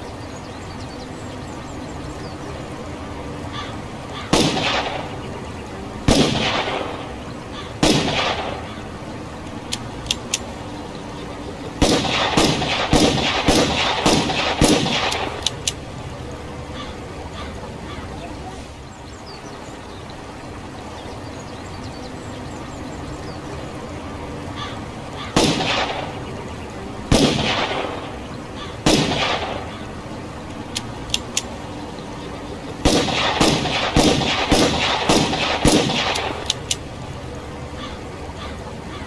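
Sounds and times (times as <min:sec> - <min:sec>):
background hiss: 0:00.0 - 0:39.0
light clicks: 0:09.4 - 0:10.6, 0:15.0 - 0:15.9, 0:30.5 - 0:31.6, 0:35.7 - 0:37.0.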